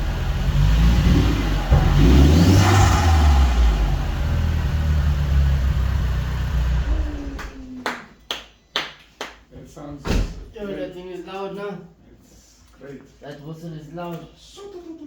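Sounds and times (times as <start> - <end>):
car engine revving: 0.0 - 7.8.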